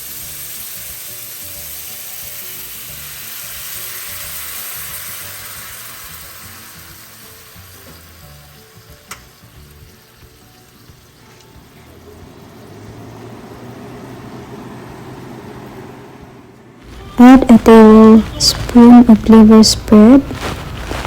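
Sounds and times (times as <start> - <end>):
sauce sizzling in a pan: 0.0 - 14.4.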